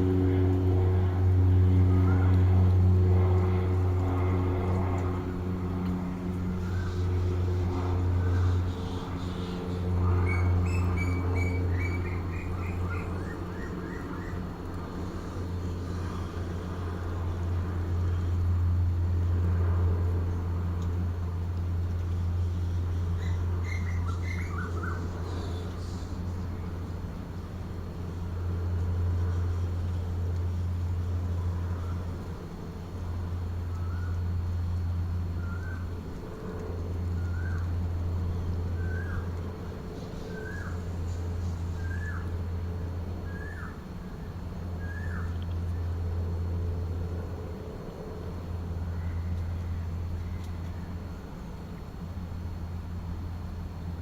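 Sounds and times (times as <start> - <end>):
engine droning: 0.0 - 54.0
low steady rumble: 0.0 - 54.0
birds chirping and calling: 10.2 - 14.4, 23.2 - 25.6.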